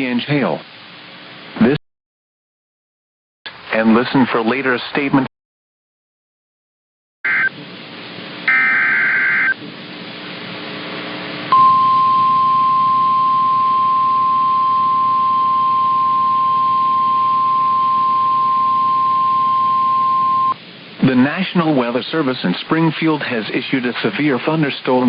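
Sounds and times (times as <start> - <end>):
faint radio hiss: 0.0 - 1.8, 3.5 - 5.3, 20.6 - 25.0
weather radio alarm tone: 7.3 - 7.5, 8.5 - 9.6, 11.6 - 20.6.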